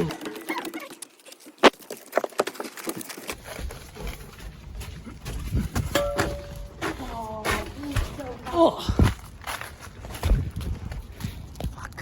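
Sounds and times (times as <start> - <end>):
footsteps and scuffs: 1.6 - 12.0.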